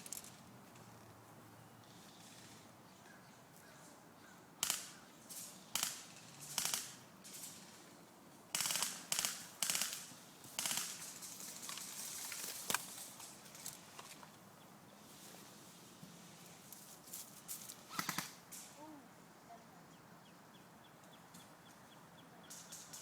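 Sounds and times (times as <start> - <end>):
airsoft guns firing: 4.6 - 5.0, 5.7 - 7.8, 8.5 - 11.7, 17.9 - 18.4.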